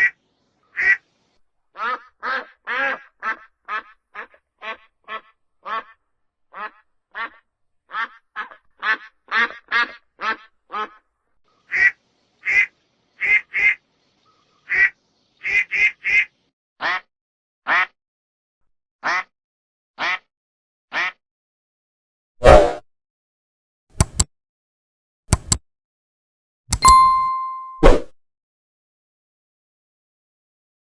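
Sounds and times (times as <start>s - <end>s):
duck quacking: 0.8s - 1.0s, 1.8s - 11.1s, 14.7s - 17.0s, 17.7s - 18.0s, 19.0s - 19.3s, 20.0s - 20.3s, 20.9s - 21.2s.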